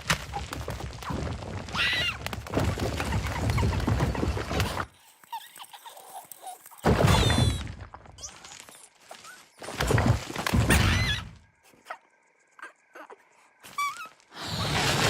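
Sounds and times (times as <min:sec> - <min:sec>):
squeaky chirps: 0:05.0 - 0:09.6, 0:10.6 - 0:14.9.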